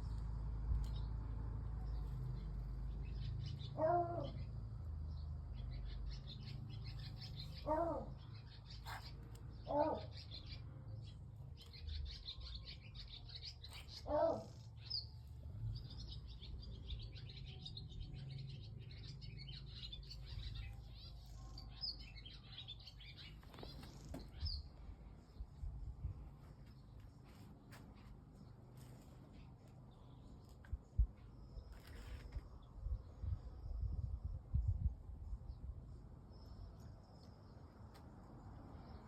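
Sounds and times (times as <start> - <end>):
small birds chirping: 0.0 - 39.0
steady low rumble: 24.3 - 27.0, 32.6 - 36.7.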